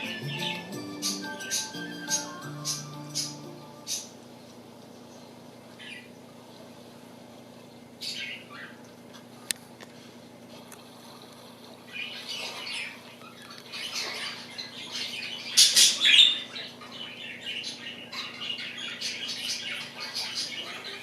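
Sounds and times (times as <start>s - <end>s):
budgerigars chattering and squawking: 0.0s - 4.1s, 8.0s - 8.8s, 11.9s - 21.0s.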